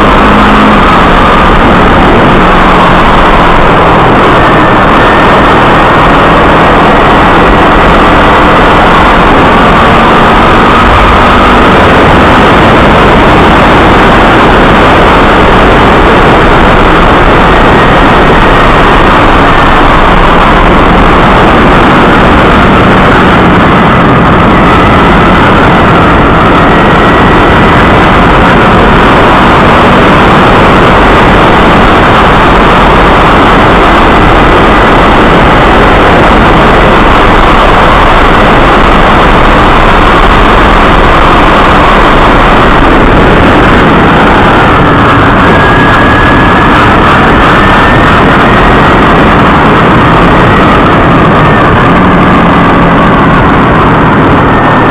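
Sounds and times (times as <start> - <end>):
motorcycle engine running: 0.0 - 54.9
wind and road rush: 0.0 - 54.9.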